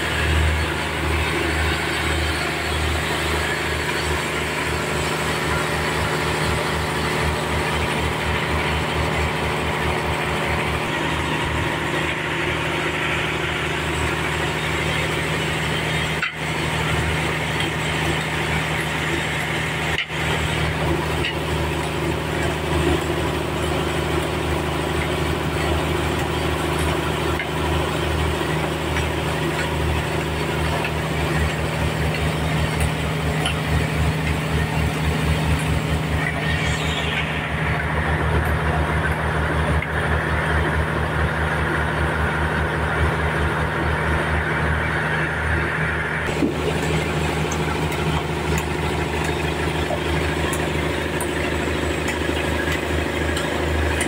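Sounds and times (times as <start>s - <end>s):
sawmill engine hum: 0.0s - 54.0s.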